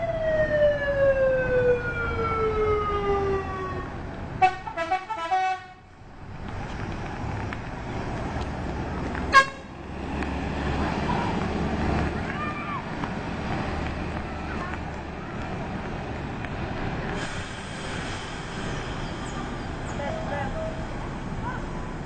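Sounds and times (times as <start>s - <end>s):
siren-like bus horn: 0.0s - 5.8s, 9.3s - 9.8s
road noise: 0.0s - 22.0s
stuttering multi-note honks: 9.3s - 9.8s.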